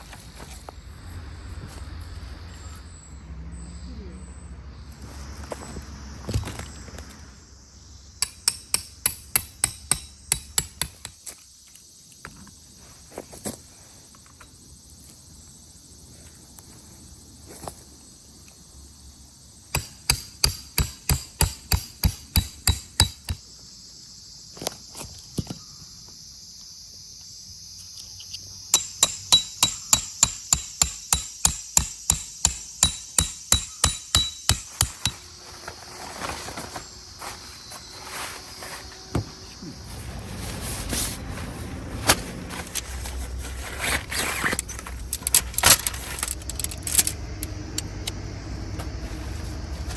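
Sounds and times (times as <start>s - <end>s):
hammer striking metal tent pegs: 8.2s - 11.2s, 19.8s - 23.4s, 28.8s - 35.3s.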